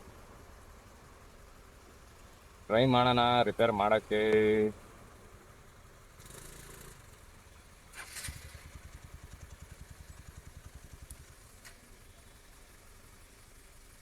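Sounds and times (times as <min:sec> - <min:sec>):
motorcycle engine idling: 0:00.0 - 0:14.0
motorcycle engine starting: 0:06.1 - 0:14.0.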